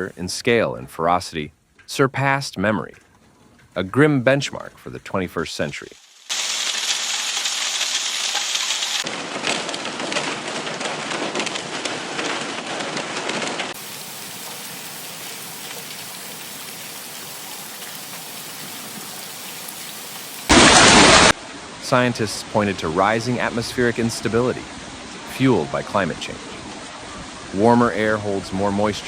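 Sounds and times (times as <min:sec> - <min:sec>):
heavy rain pelting surfaces: 0:05.9 - 0:29.0.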